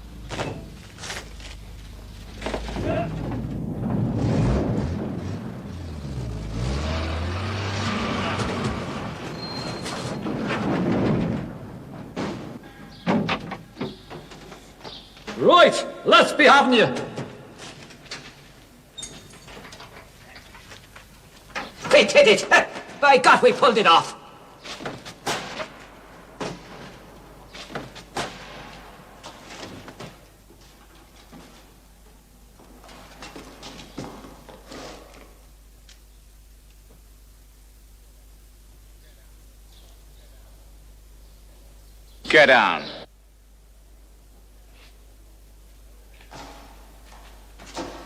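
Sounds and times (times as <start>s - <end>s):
vehicle running: 3.4s - 10.2s
doors knocking and thudding: 8.4s - 15.5s.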